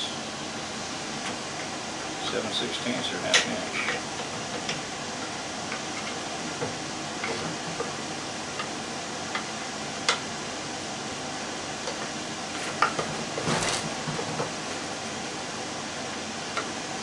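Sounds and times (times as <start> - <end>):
steady background hiss: 0.0 - 13.0.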